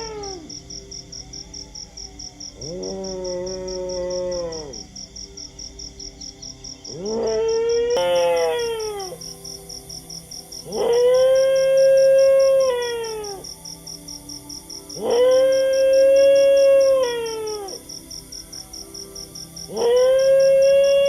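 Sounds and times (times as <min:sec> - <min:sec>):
dogs howling: 0:00.0 - 0:00.5, 0:02.6 - 0:04.9, 0:06.9 - 0:09.2, 0:10.6 - 0:13.5, 0:15.0 - 0:17.9, 0:19.7 - 0:21.0
steady high pulsing chirp: 0:00.0 - 0:21.0.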